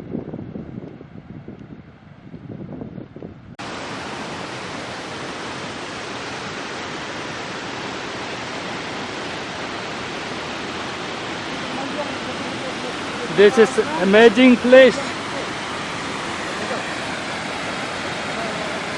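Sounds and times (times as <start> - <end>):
gusty wind on microphone: 0.0 - 7.2
waterfall roaring: 3.6 - 18.9.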